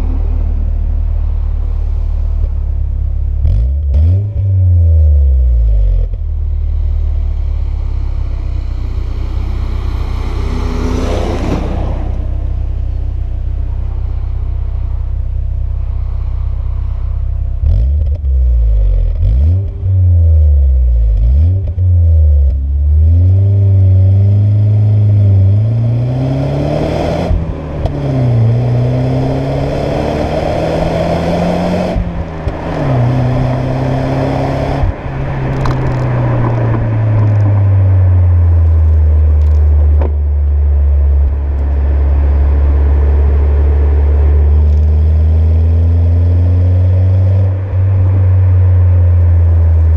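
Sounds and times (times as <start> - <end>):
car engine revving: 0.0 - 49.9.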